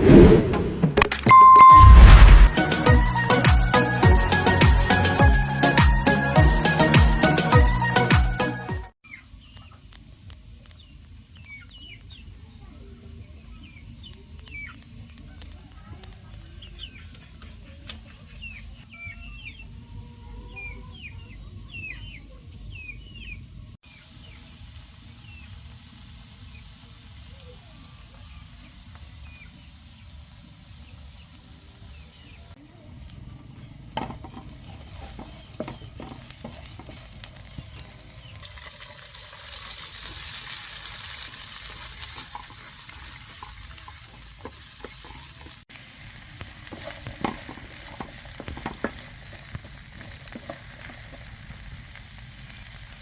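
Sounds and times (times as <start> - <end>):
food sizzling in a pan: 23.8 - 32.6, 34.0 - 53.0.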